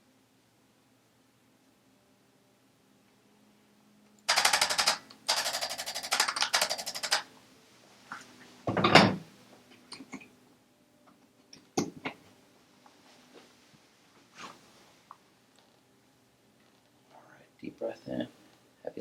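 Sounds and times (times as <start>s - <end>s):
sharp clicks: 4.2s - 7.2s
rapid mechanical tapping: 4.3s - 7.2s
rustling shuffle: 12.9s - 15.1s.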